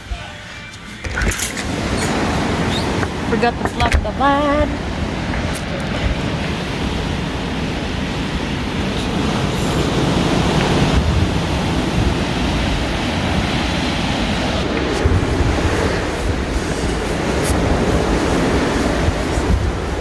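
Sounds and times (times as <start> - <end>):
wind blowing on microphone: 1.5 - 20.0.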